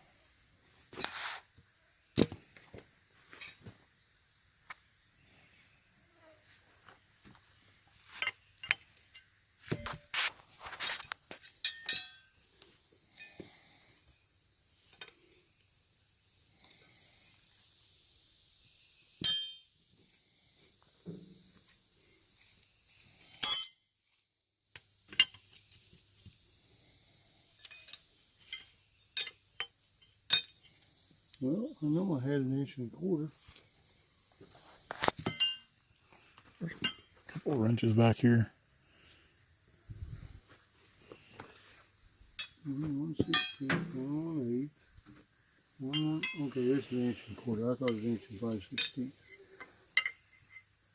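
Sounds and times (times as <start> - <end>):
metal tools clinking: 8.1 - 12.4, 27.5 - 30.8, 34.9 - 35.8, 36.6 - 37.4, 42.3 - 44.0, 45.8 - 47.2, 47.8 - 50.7
metallic ring: 11.6 - 12.4, 19.2 - 19.8, 23.3 - 23.9, 27.6 - 30.8, 35.2 - 35.8, 36.7 - 37.2, 42.4 - 43.8, 45.8 - 47.1, 47.8 - 50.7.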